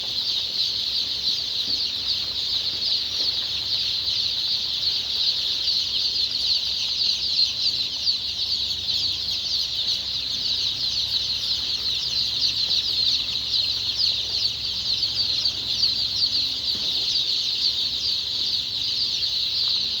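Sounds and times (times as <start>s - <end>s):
chicks peeping: 0.0s - 20.0s.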